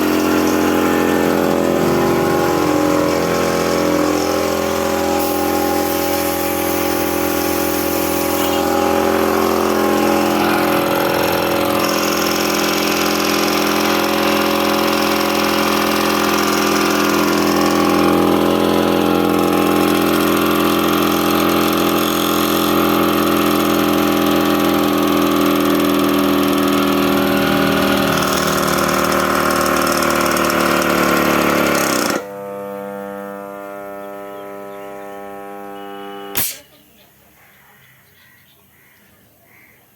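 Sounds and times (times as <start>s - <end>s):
electrical hum: 0.0s - 21.7s, 32.1s - 37.4s
air compressor droning: 0.0s - 36.7s.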